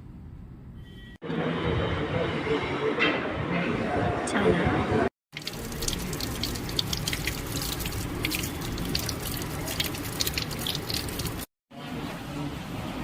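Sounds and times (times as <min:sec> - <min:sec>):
small drips and ticks: 0:05.3 - 0:11.5
water running and splashing: 0:05.3 - 0:11.5.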